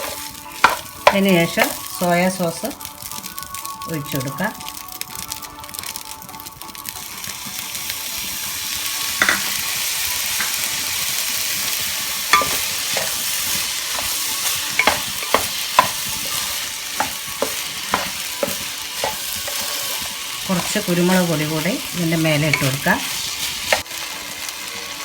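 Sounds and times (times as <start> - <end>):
rice sizzling in a pan: 0.0 - 25.0
spatula clinking against pan: 12.3 - 13.2, 13.9 - 20.0.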